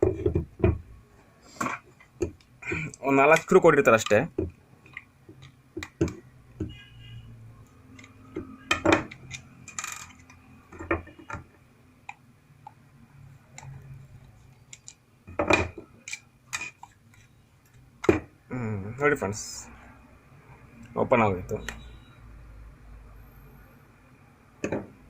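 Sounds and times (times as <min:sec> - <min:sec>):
plastic pump housing clicks and knocks: 0:01.6 - 0:06.8, 0:24.6 - 0:25.0.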